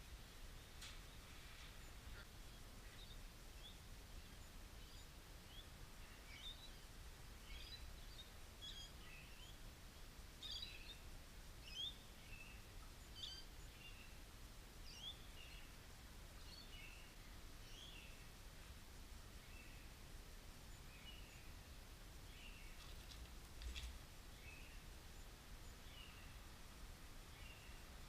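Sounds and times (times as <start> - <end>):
low outdoor background rumble: 0.0 - 28.0
faint bird chirps: 11.6 - 14.2, 24.3 - 26.6, 27.2 - 28.0.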